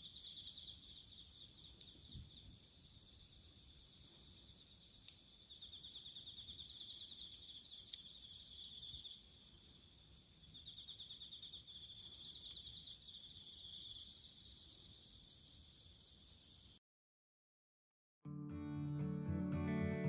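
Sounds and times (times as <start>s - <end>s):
fast pulsing insect chirps: 0.0s - 16.8s
insects trilling: 0.0s - 16.8s
faint sharp clicks: 6.8s - 8.4s, 11.4s - 12.8s.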